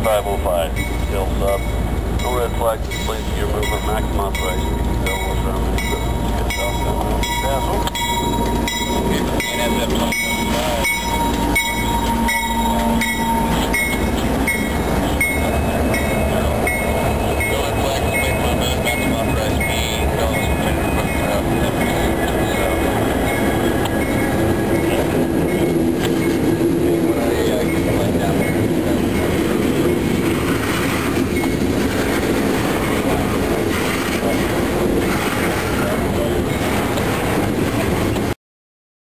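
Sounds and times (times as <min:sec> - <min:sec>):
freight train rumbling: 0:00.0 - 0:38.4
wheels clicking over rail joints: 0:02.2 - 0:16.8.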